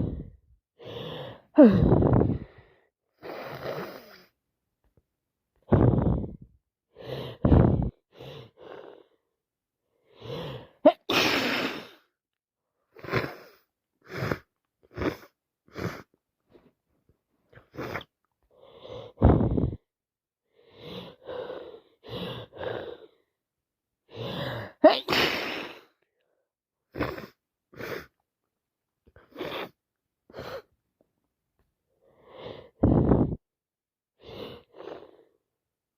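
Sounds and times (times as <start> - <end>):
woman sneezing: 10.9 - 11.9, 24.8 - 25.8.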